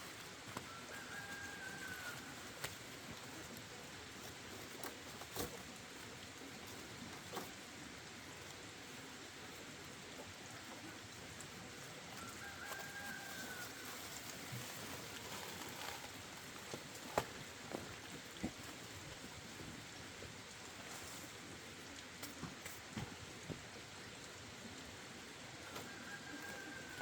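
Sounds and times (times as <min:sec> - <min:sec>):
steady hiss: 0:00.0 - 0:27.0
rooster crowing: 0:00.6 - 0:02.6, 0:12.1 - 0:14.3, 0:25.6 - 0:27.0.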